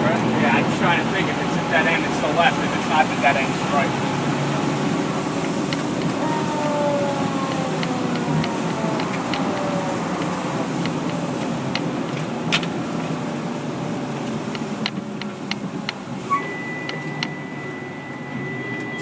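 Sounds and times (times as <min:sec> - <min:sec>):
fire engine and road noise: 0:00.0 - 0:19.0
steady high-pitched tone: 0:16.3 - 0:19.0.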